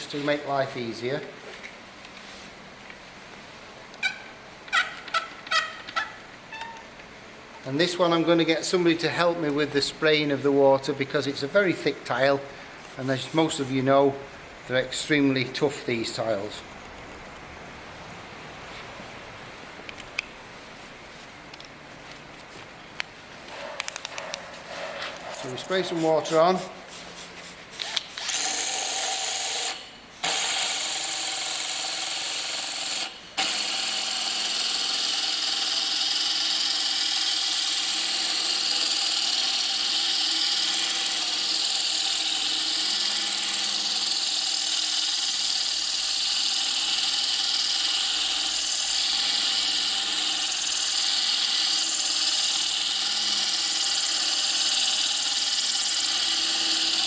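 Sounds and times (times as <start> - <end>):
drill grinding into tile: 27.8 - 57.0.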